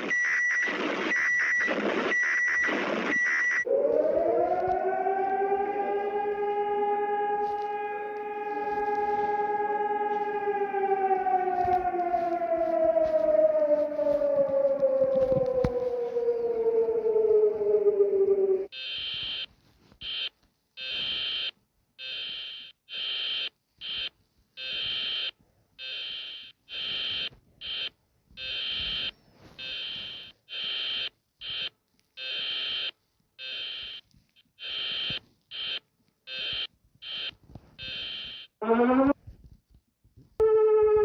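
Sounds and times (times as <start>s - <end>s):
electronic alarm beeping: 0.0s - 3.7s, 34.6s - 39.2s.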